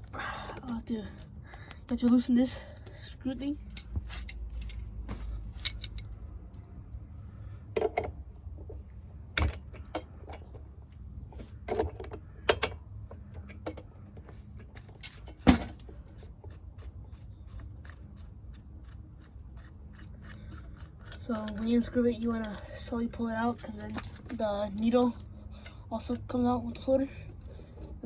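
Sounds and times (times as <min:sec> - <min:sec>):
small metallic clicks and taps: 0:17.1 - 0:22.7.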